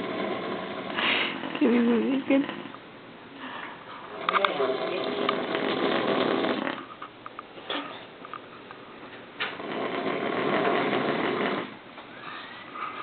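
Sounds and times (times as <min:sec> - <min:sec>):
person snoring: 0:00.0 - 0:02.7, 0:04.1 - 0:06.8, 0:09.5 - 0:12.6.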